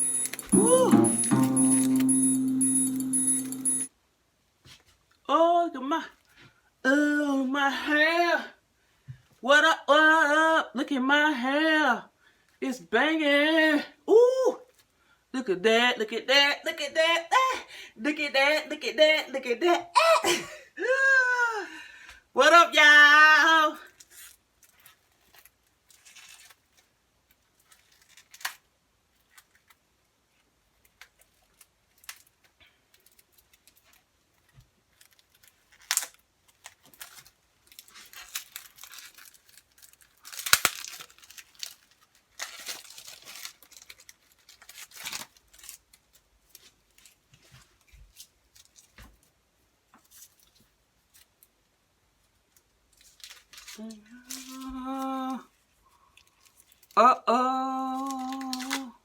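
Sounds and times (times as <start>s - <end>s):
rustling and crinkling: 23.9s - 57.0s.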